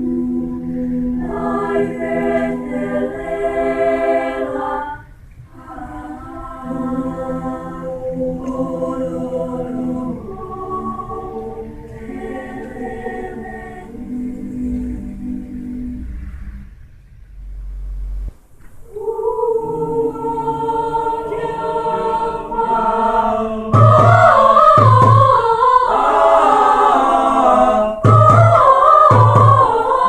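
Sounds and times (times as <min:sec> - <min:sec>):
choir singing held chords: 0:00.0 - 0:17.7, 0:18.3 - 0:30.0.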